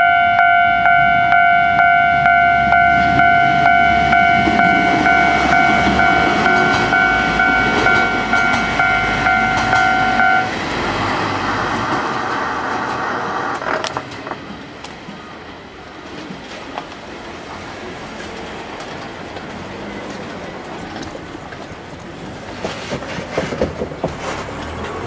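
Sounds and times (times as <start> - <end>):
level crossing bell ringing: 0.0 - 10.6
train rail rumble: 0.0 - 25.0.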